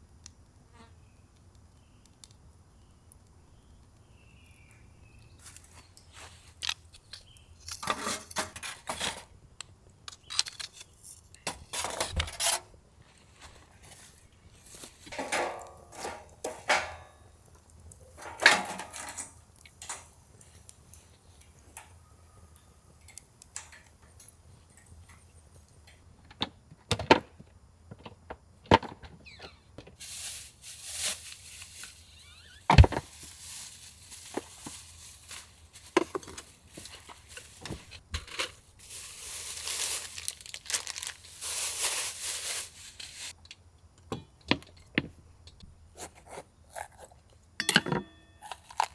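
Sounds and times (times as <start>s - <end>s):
packaging rustling and crinkling: 29.8s - 43.4s.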